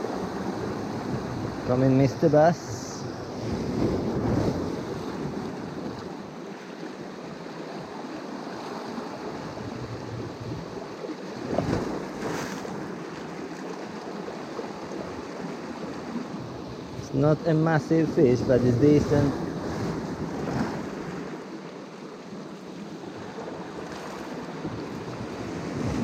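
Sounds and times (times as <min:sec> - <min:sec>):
wind on microphone: 0:00.0 - 0:06.2, 0:11.4 - 0:12.9, 0:23.2 - 0:26.0
sea waves washing on shore: 0:00.0 - 0:26.0.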